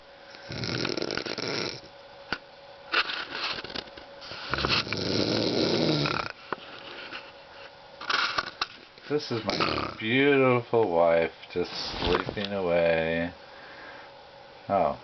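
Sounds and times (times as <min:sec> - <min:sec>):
woman snoring: 0:00.4 - 0:01.9, 0:04.5 - 0:06.4, 0:09.5 - 0:10.0.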